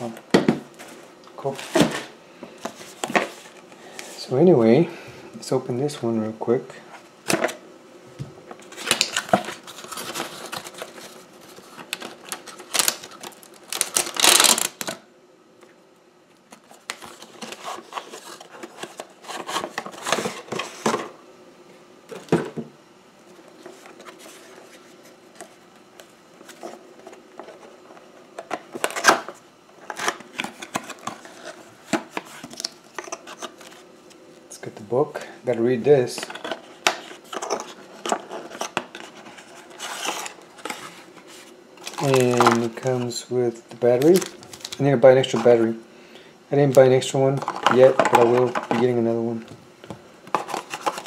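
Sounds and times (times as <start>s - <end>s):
packaging rustling and clicking: 8.6s - 15.0s, 36.2s - 43.0s, 43.7s - 45.6s, 50.3s - 51.0s.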